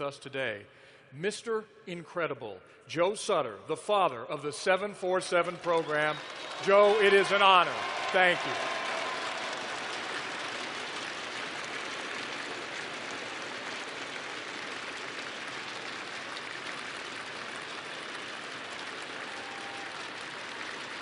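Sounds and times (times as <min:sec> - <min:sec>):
large crowd applauding: 0:05.4 - 0:21.0.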